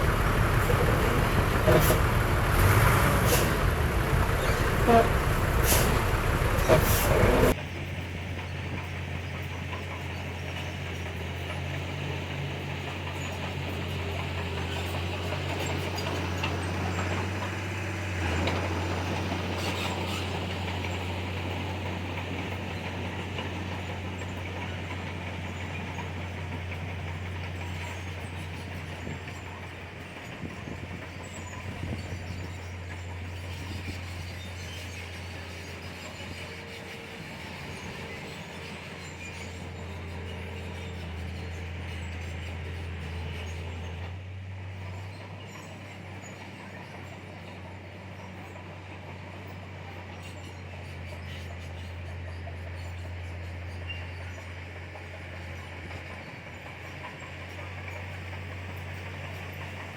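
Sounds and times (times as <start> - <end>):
rattling mechanical noise: 0.0 - 7.6
bulldozer diesel engine running: 0.0 - 59.9.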